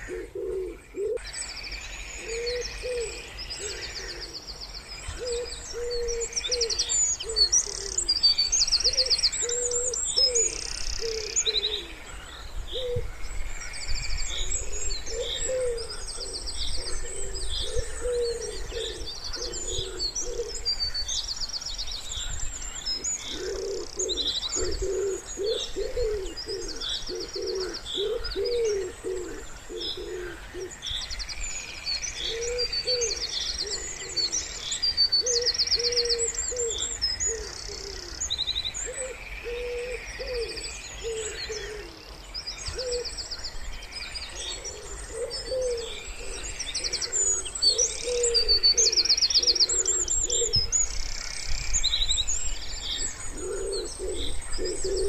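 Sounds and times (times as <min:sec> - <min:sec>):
wood pigeon cooing: 0:00.0 - 0:01.2, 0:02.2 - 0:04.4, 0:05.1 - 0:08.2, 0:08.8 - 0:12.0, 0:14.5 - 0:20.7, 0:23.0 - 0:30.8, 0:32.2 - 0:34.4, 0:35.2 - 0:38.2, 0:38.8 - 0:42.0, 0:42.7 - 0:43.1, 0:44.4 - 0:50.7, 0:53.3 - 0:55.0
songbirds chirping and trilling: 0:00.0 - 0:55.0.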